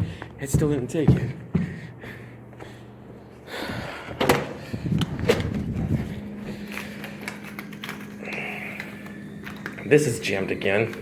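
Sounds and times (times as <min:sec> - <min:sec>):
low machine hum: 0:00.0 - 0:11.0
bill rustling: 0:04.7 - 0:11.0.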